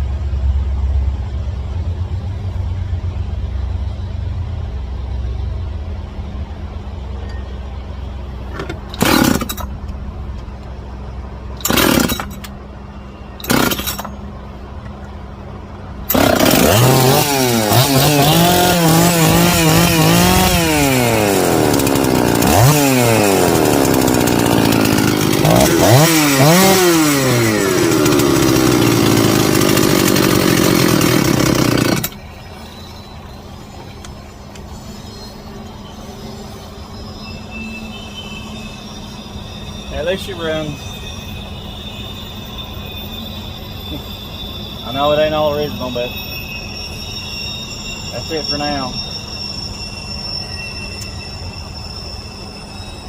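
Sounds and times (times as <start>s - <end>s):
chainsaw engine revving: 8.9s - 9.6s, 11.6s - 12.4s, 13.4s - 14.0s, 16.1s - 32.2s.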